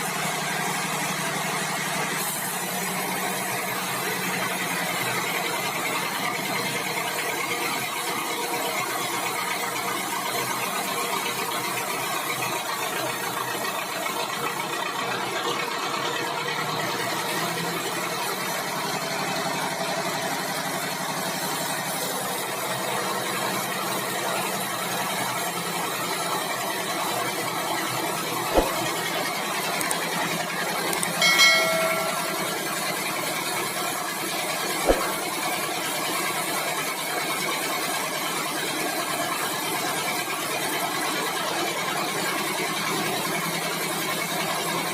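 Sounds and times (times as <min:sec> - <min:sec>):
sawmill machinery running: 0:00.0 - 0:07.4
sharp knock: 0:28.6 - 0:29.0, 0:31.2 - 0:32.8, 0:34.9 - 0:35.3.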